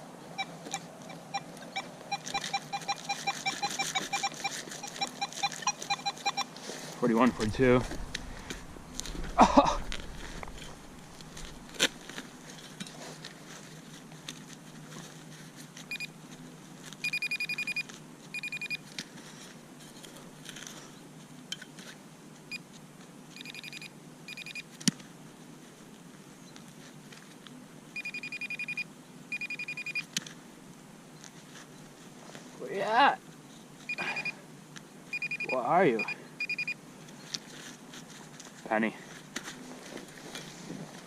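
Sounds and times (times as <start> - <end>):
metal detector pulsing tone: 0.4 - 6.5, 17.0 - 18.8, 23.4 - 24.6, 28.0 - 30.0, 35.1 - 36.8.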